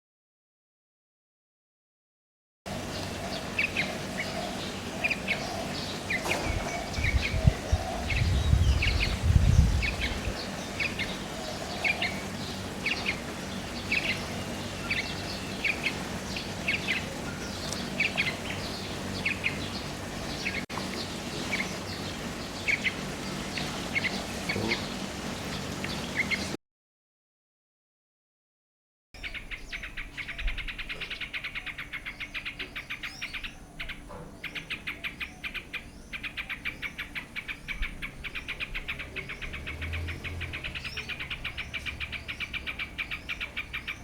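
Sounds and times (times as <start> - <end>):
low rumbling noise: 6.2 - 26.6.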